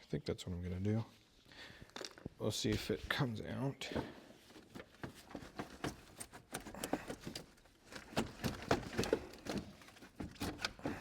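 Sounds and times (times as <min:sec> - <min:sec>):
clicks and knocks of car parts: 0:04.9 - 0:11.0.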